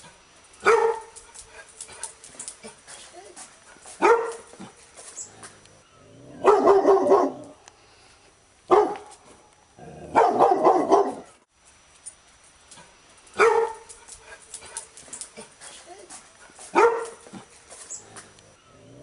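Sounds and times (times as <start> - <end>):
dog barking: 0.6 - 1.2, 3.9 - 4.6, 6.4 - 7.6, 8.7 - 9.1, 10.1 - 11.4, 13.4 - 13.9, 16.6 - 17.4.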